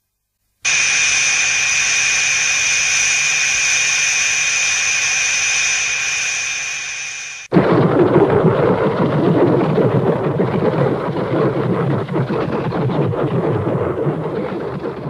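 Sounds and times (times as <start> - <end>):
crackling explosion rumble: 7.4 - 15.0.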